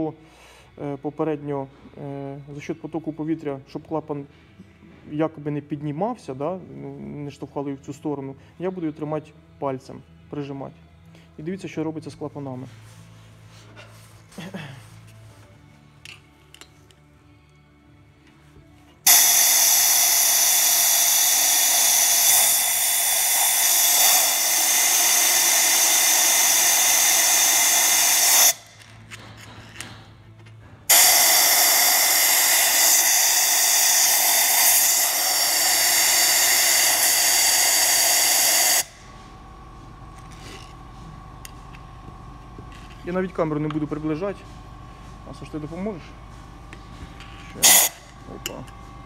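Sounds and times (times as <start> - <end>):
compressed air hissing: 18.5 - 30.2, 30.8 - 49.0.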